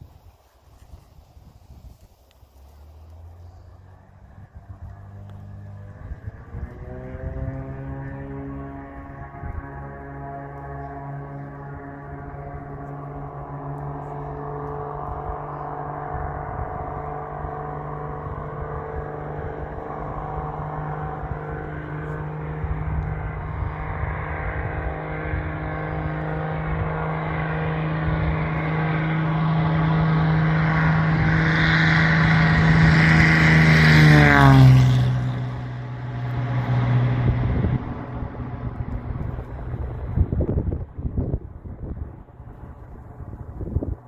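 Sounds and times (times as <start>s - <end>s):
propeller airplane engine droning: 0.0s - 44.0s.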